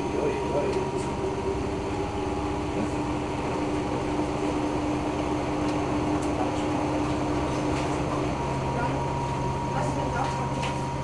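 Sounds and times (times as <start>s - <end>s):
washing machine motor hum: 0.0s - 11.0s.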